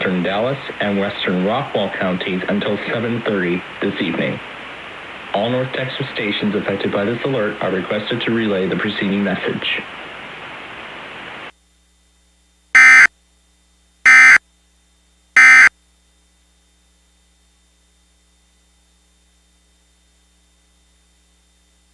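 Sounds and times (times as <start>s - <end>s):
buzzing digital data bursts: 12.8s - 13.1s, 14.1s - 14.4s, 15.4s - 15.7s.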